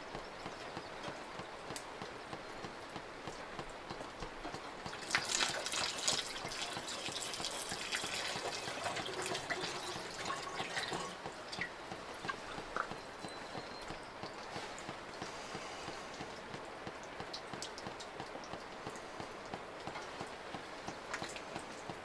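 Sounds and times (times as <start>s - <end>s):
water dripping: 0.0s - 22.0s
water pouring and splashing: 4.8s - 13.4s.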